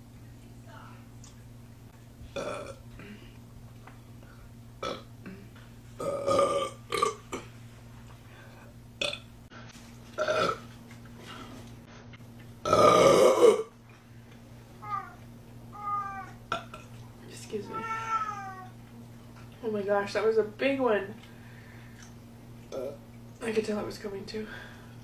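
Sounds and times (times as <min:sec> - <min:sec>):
woman burping: 0:02.4 - 0:03.3, 0:04.8 - 0:07.4, 0:09.0 - 0:09.2, 0:10.2 - 0:10.6, 0:12.6 - 0:13.7.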